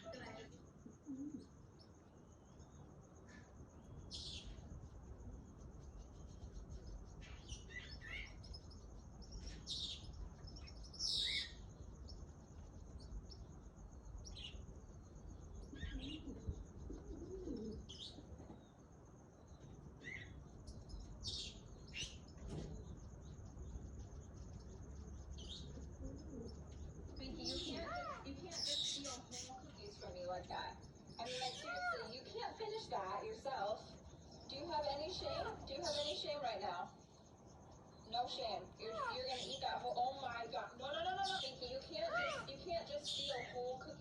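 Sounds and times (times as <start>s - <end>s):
parrot chirps and squawks: 31.2s - 32.1s, 42.0s - 42.5s.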